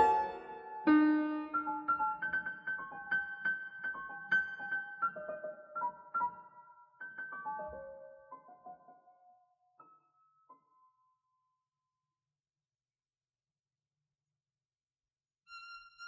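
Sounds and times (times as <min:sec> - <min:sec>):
solo piano notes: 0:00.0 - 0:05.9.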